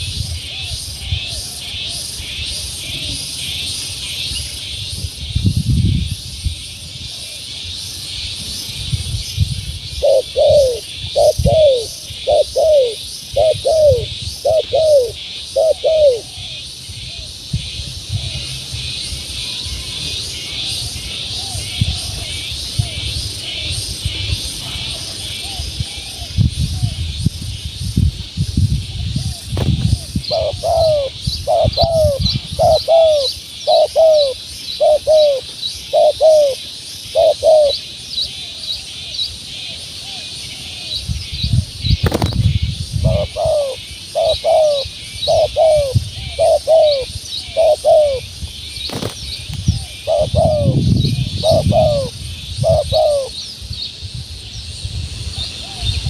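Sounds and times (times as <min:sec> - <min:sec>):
dove cooing: 0:00.0 - 0:03.5, 0:09.9 - 0:17.3, 0:19.4 - 0:27.0, 0:28.9 - 0:38.9, 0:43.0 - 0:48.3, 0:49.7 - 0:53.4.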